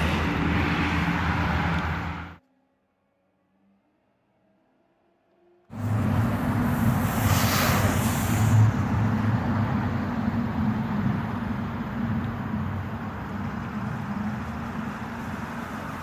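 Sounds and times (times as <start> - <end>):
hiss: 5.7 - 10.5
wind rumble on microphone: 5.7 - 16.0.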